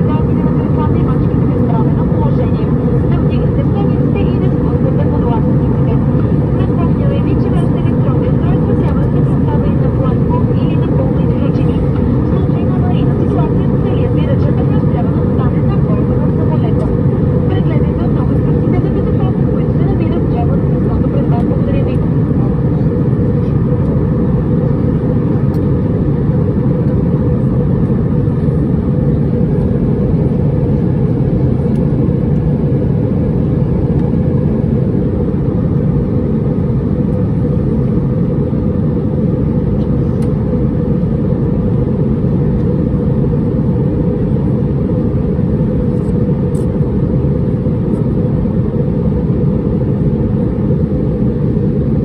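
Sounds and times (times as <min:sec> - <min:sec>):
airliner engine noise in cabin: 0:00.0 - 0:52.0.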